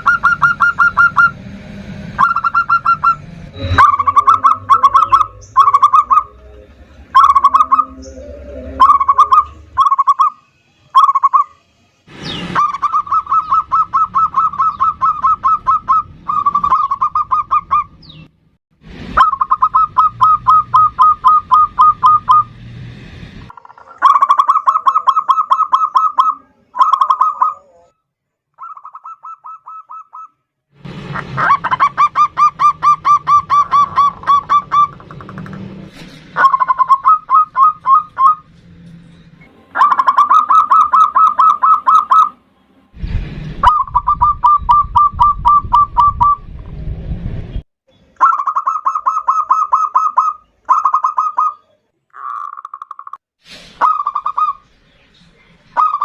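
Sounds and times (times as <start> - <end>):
dove cooing: 2.2 - 10.3, 12.6 - 17.9, 31.4 - 35.5, 36.4 - 38.4.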